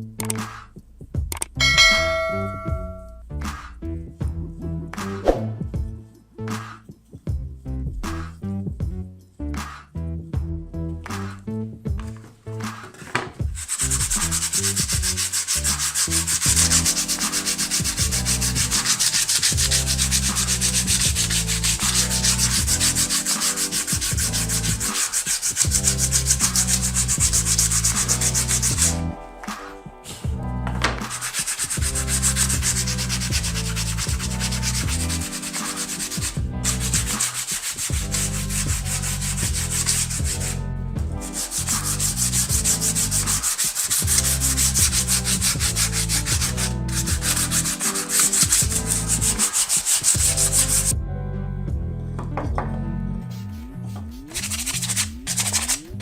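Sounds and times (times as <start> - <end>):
wood being sanded: 13.6 - 29.1, 31.0 - 40.6, 41.2 - 50.9, 54.2 - 56.0.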